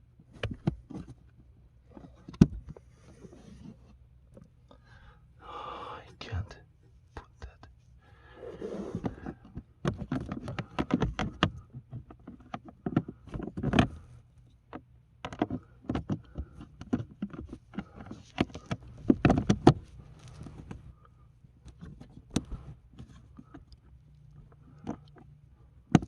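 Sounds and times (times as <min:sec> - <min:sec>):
plastic clicks and knocks: 0:02.0 - 0:02.8, 0:09.0 - 0:14.0, 0:14.7 - 0:19.9.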